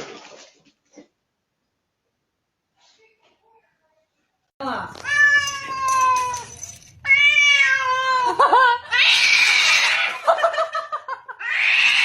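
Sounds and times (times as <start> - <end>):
cat yowling: 5.0 - 10.2, 11.4 - 12.0.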